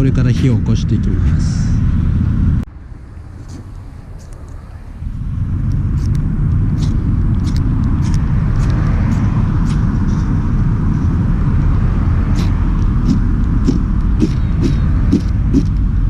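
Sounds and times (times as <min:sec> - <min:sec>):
wind rumble on microphone: 0:00.0 - 0:16.0.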